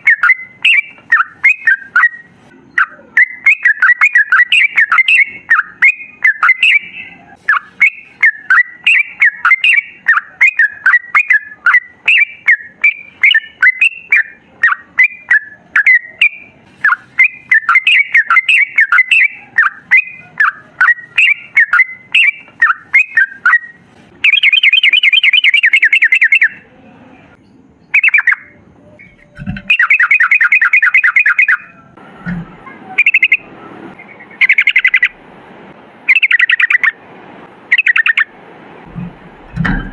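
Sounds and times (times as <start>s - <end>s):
bird singing bubbling notes: 27.9s - 31.8s, 33.0s - 35.2s, 36.1s - 37.0s, 37.7s - 38.3s
low thumps: 29.2s - 29.8s, 38.8s - 39.9s.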